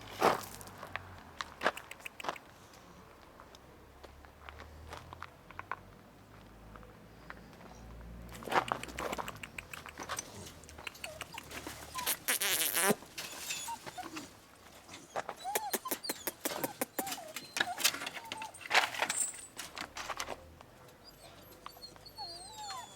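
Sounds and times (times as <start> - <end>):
dog whining: 9.0 - 19.5, 21.0 - 22.9.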